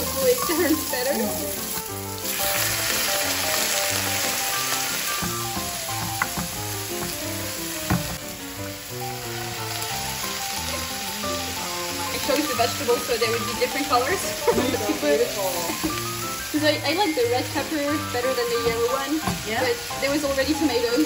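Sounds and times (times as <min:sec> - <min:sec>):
vegetables sizzling in a pan: 0:00.0 - 0:21.0
utensil tapping a pan: 0:03.6 - 0:08.2, 0:18.3 - 0:19.7.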